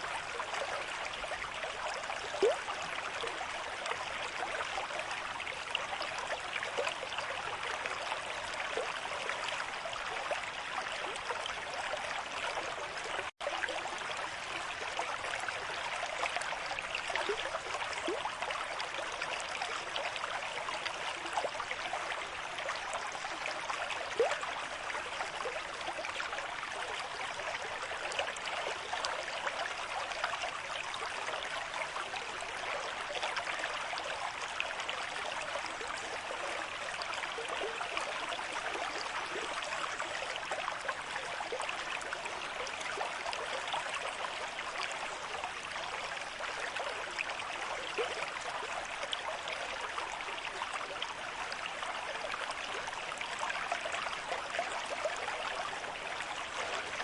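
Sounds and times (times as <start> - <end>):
water bubbling gurgles: 0.0 - 57.0.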